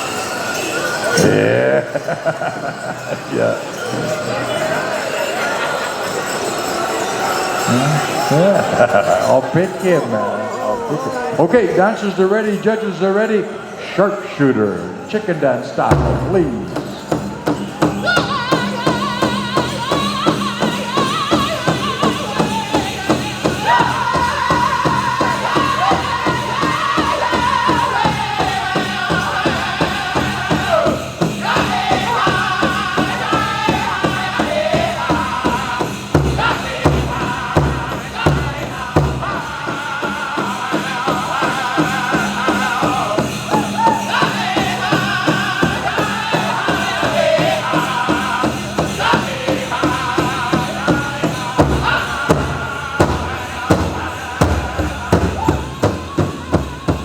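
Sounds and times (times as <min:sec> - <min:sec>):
group singing in unison: 0:00.5 - 0:12.1, 0:15.8 - 0:57.0
big drum beating: 0:15.9 - 0:57.0.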